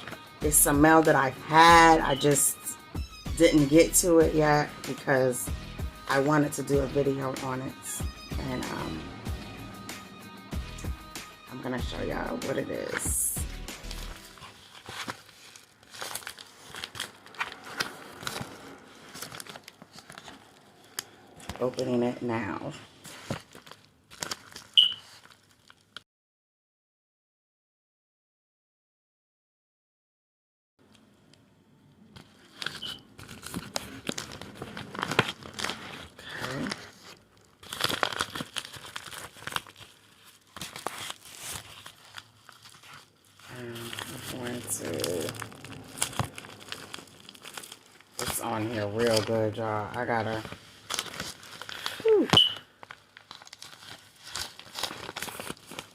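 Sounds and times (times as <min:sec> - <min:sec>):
packaging crinkling: 0:13.8 - 0:21.8, 0:22.9 - 0:26.0, 0:32.1 - 0:55.9.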